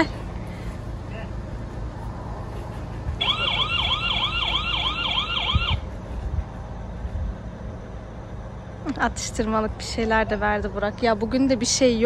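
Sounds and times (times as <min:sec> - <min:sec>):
low outdoor rumble: 0:00.0 - 0:12.0
electronic siren yelping: 0:03.2 - 0:05.9.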